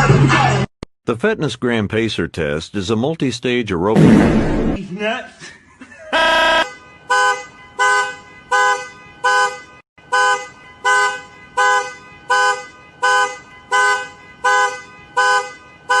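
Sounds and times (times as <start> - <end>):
two-tone car horn honking: 6.2 - 16.0.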